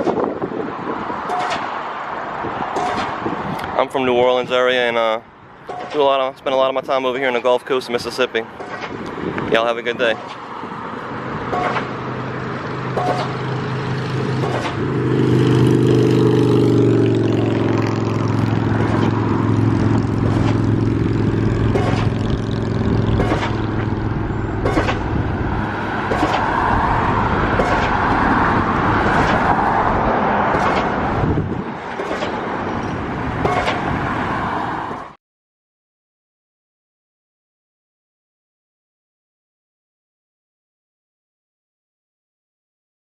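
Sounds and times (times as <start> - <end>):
road noise: 0.0 - 35.2
car engine hum: 8.2 - 35.1.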